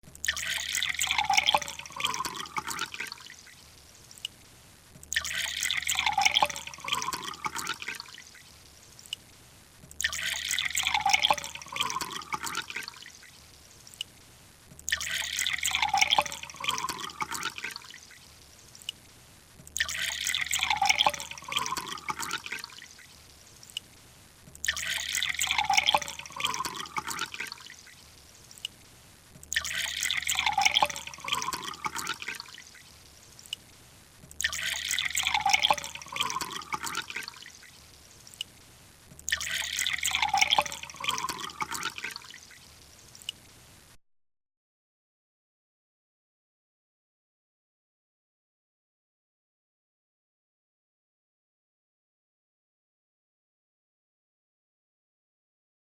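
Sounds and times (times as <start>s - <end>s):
faint water drips: 0.1s - 43.9s
water pouring and splashing: 0.2s - 4.3s, 5.1s - 9.2s, 10.0s - 13.3s, 14.9s - 18.2s, 19.8s - 23.8s, 24.6s - 28.8s, 29.5s - 33.6s, 34.4s - 38.5s, 39.2s - 43.5s.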